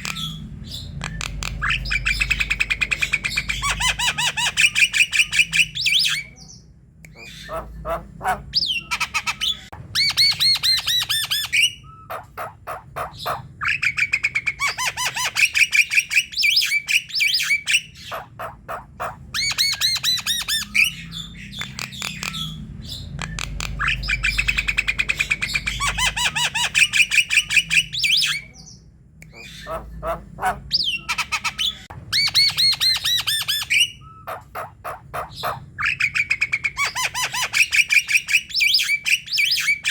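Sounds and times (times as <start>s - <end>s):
bird singing harsh notes and whistles: 0.0s - 7.6s, 8.6s - 12.1s, 13.2s - 18.1s, 19.4s - 29.7s, 30.7s - 34.3s, 35.3s - 39.9s.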